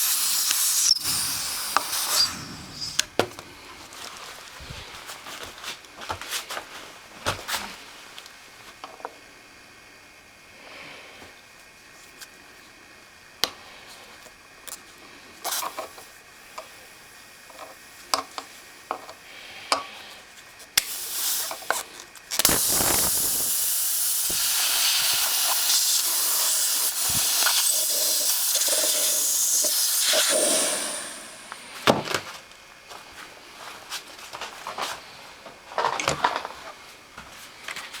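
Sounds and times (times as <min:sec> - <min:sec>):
compressed air hissing: 0:00.0 - 0:03.2, 0:20.8 - 0:21.7, 0:22.4 - 0:31.8.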